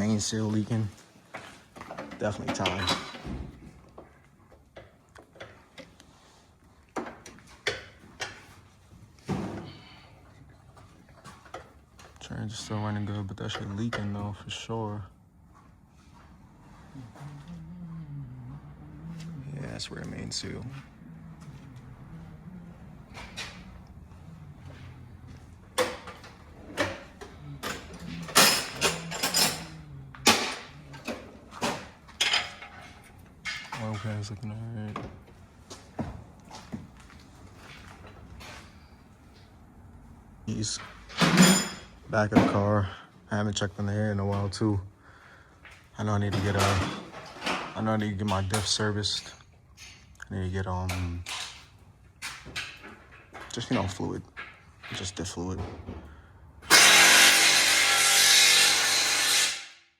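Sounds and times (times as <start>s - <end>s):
low steady hum: 9.2s - 35.2s
knocks and clanks of work: 24.7s - 38.6s, 52.2s - 59.7s.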